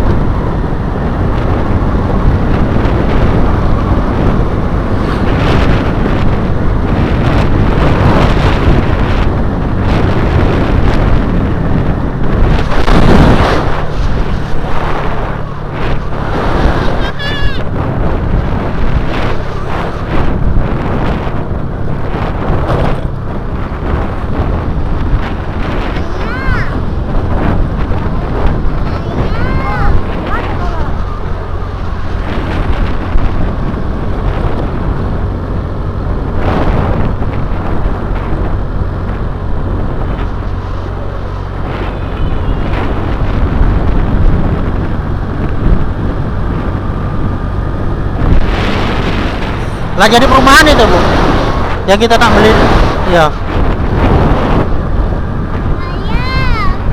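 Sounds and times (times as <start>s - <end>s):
motorcycle engine rumble: 0.0s - 56.9s
road noise: 0.0s - 56.9s
wind buffeting microphone: 0.0s - 56.9s.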